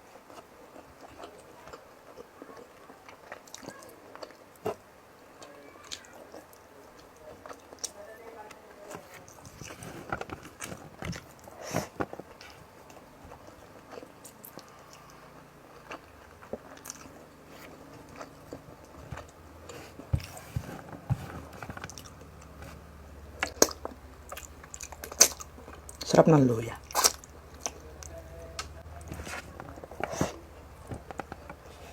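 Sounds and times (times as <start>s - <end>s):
person chewing with wet smacks: 0.1s - 8.0s, 8.8s - 31.9s.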